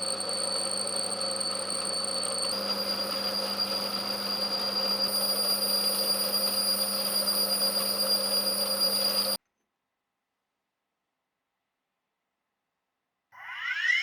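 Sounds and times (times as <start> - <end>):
lathe whining while cutting metal: 0.0 - 9.4.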